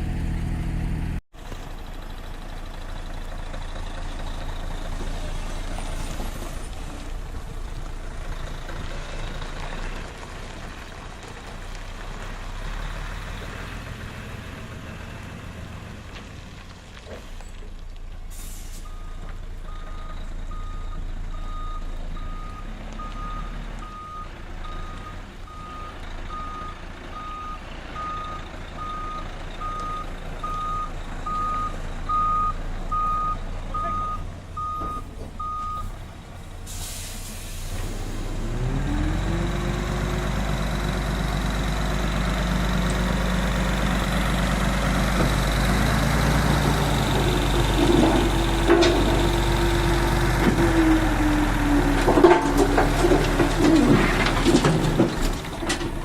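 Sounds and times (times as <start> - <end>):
diesel engine running and revving: 0.0 - 56.0
reversing alarm beeping: 18.9 - 35.9.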